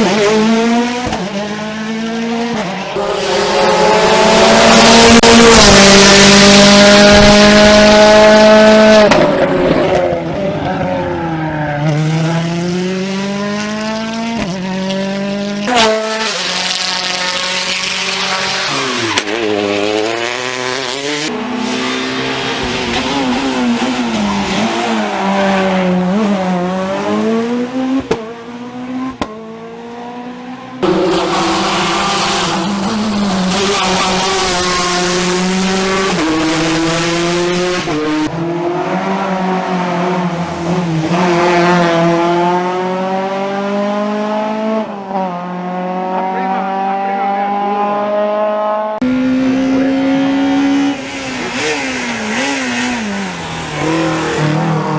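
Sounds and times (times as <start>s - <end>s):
rally cars at full throttle: 0.0s - 54.9s.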